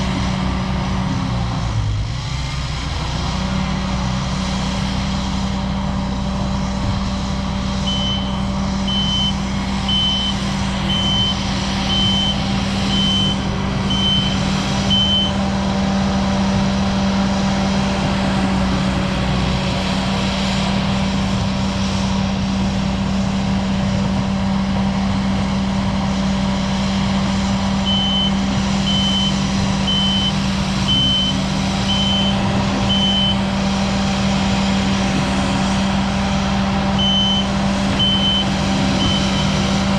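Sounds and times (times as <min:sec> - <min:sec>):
skid steer engine running: 0:00.0 - 0:39.9
backup alarm beeping: 0:07.9 - 0:15.4, 0:27.9 - 0:33.4, 0:37.0 - 0:39.6.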